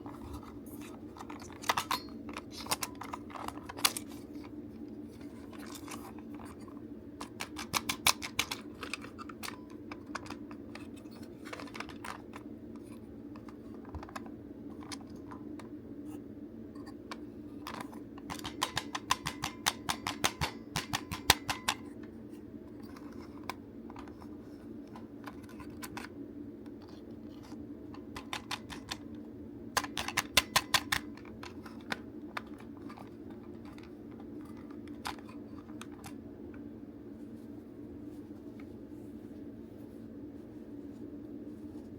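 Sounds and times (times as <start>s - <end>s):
steady low hum: 0.0s - 41.9s
rapid clicks on plastic toy: 1.2s - 4.5s, 7.2s - 12.4s, 17.6s - 21.8s, 26.7s - 29.2s, 29.8s - 36.2s.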